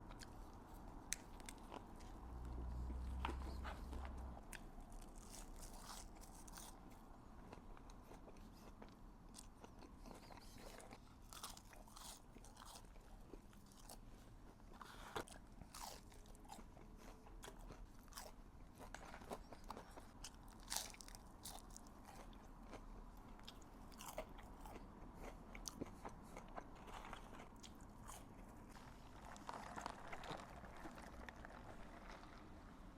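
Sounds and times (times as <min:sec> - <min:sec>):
burger chewing crunches: 0:09.4 - 0:14.1, 0:14.7 - 0:32.6.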